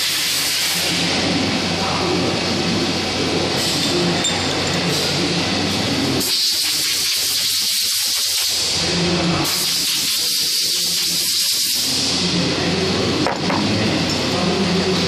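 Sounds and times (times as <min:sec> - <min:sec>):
low machine hum: 0:00.2 - 0:06.3, 0:11.9 - 0:15.0.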